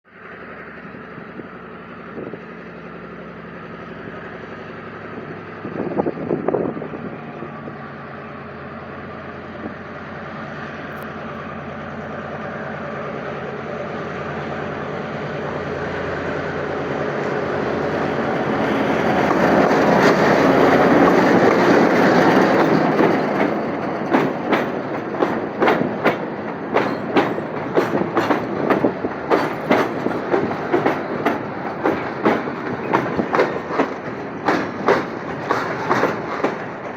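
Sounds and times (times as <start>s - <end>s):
diesel locomotive engine running: 0.1s - 36.9s
train wheels clicking over rail joints: 17.2s - 36.9s.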